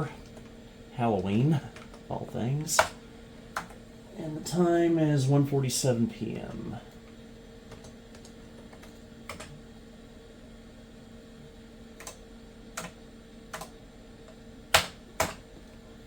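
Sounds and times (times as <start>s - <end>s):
computer hum: 0.0s - 16.0s.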